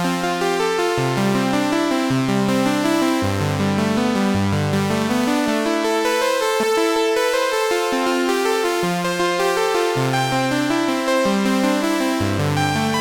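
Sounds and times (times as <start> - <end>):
synthesizer held chords: 12.2 - 13.0.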